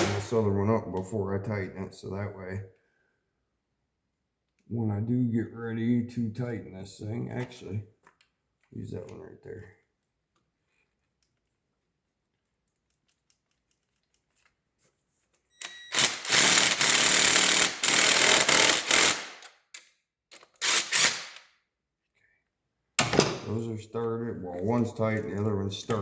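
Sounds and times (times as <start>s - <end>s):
impact wrench hammering: 0.0s - 0.3s, 16.0s - 19.4s.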